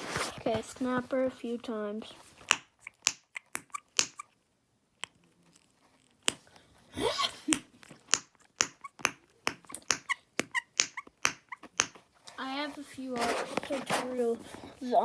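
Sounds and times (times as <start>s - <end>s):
fidget toy snapping clicks: 2.5s - 4.3s.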